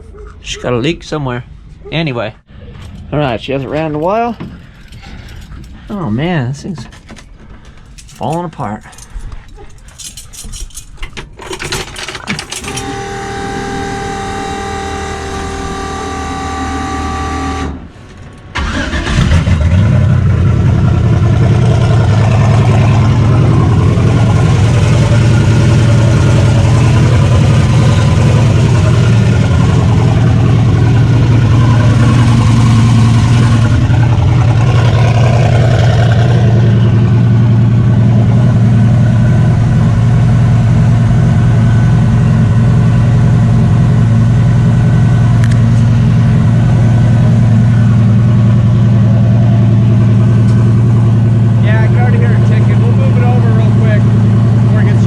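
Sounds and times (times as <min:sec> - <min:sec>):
engine clicks: 0:06.6 - 0:13.0
starter motor whirring: 0:11.4 - 0:15.0, 0:18.5 - 0:19.7
car engine idling loudly: 0:18.6 - 0:55.0.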